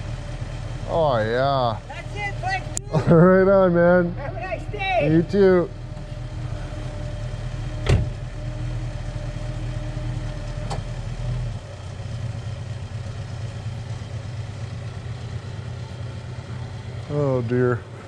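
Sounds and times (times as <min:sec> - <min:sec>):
vehicle engine running: 0:00.0 - 0:18.0
sharp thump: 0:07.8 - 0:08.2.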